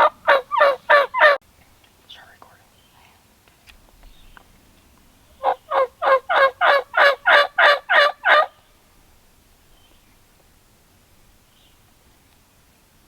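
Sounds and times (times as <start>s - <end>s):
turkey yelps: 0.0s - 1.4s, 5.4s - 8.6s.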